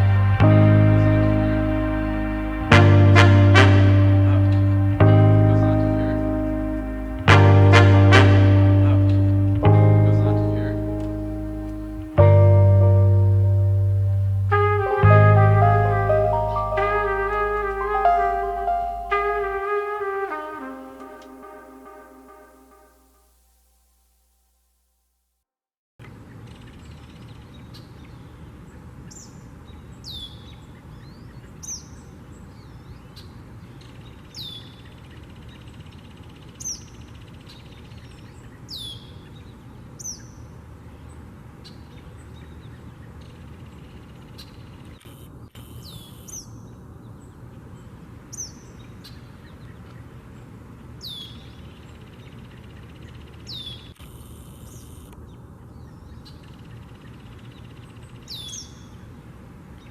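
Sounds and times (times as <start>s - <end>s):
low background rumble: 0.0s - 17.5s.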